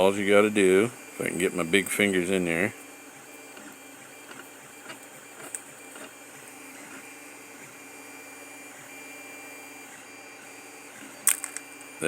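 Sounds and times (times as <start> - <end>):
mechanical hum with whine: 0.0 - 12.0.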